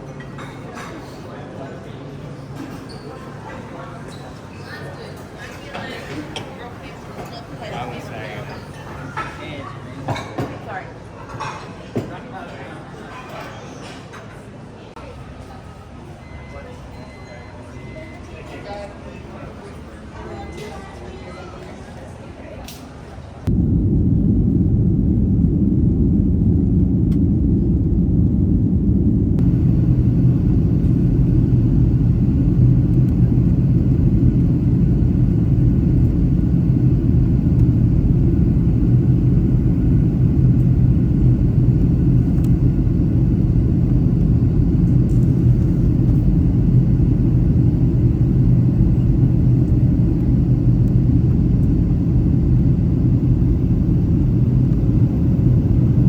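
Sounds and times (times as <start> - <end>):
engine hum: 23.5 - 56.0.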